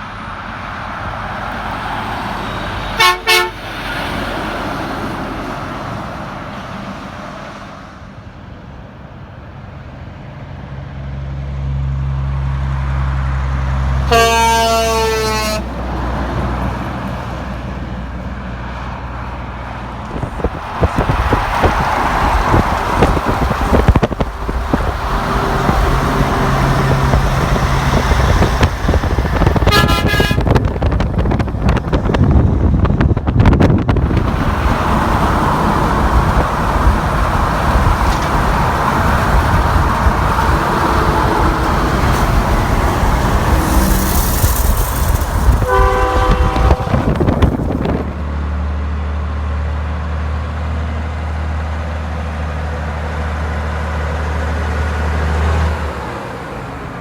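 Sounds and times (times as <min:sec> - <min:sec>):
heavy traffic passing: 0:00.0 - 0:57.0
car horn: 0:02.8 - 0:03.7, 0:14.0 - 0:15.8, 0:20.2 - 0:31.0, 0:45.0 - 0:48.0.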